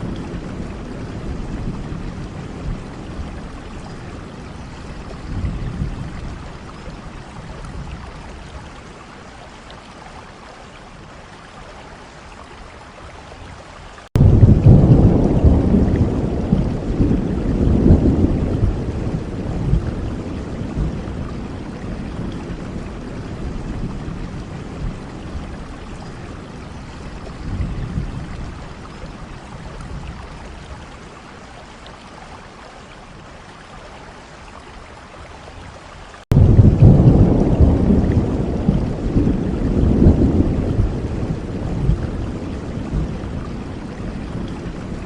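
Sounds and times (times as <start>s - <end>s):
steady rain: 0.0s - 45.0s
rolling thunder: 14.2s - 26.5s, 36.3s - 45.0s.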